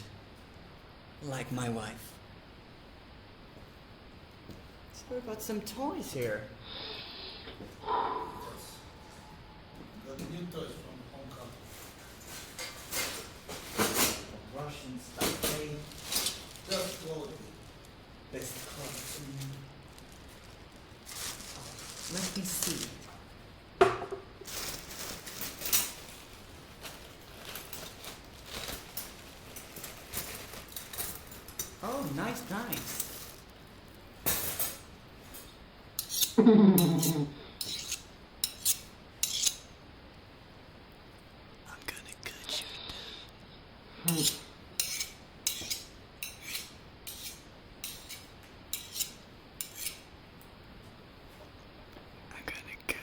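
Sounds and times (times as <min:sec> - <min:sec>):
tools being handled: 0:15.2 - 0:17.2, 0:35.4 - 0:39.7, 0:44.1 - 0:50.1
metal blade scraping: 0:36.0 - 0:39.7, 0:44.1 - 0:50.1.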